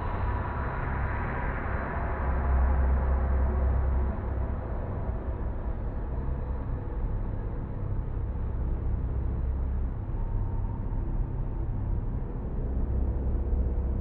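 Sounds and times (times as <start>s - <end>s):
low sci-fi drone: 0.0s - 14.0s.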